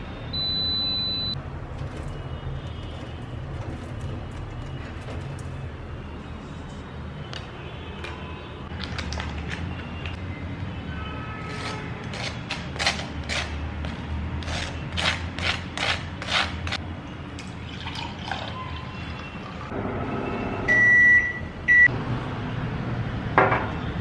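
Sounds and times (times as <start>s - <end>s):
electronic beep: 0.4s - 1.4s.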